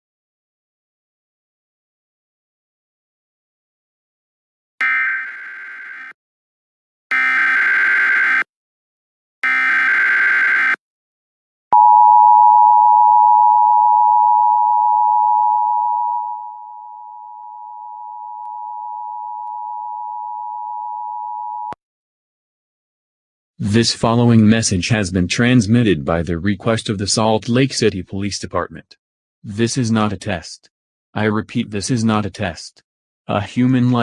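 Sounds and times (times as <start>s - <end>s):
two-tone attention signal: 11.8s - 21.8s.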